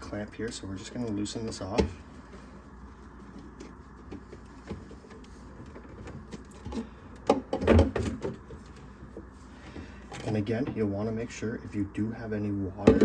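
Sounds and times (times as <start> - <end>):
knocks and clatter of hose: 3.2 - 8.8.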